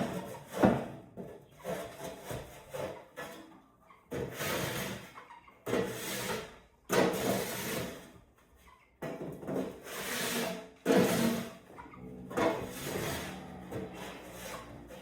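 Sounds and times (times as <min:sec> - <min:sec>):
bedding scraped out of cage: 0:09.8 - 0:15.0.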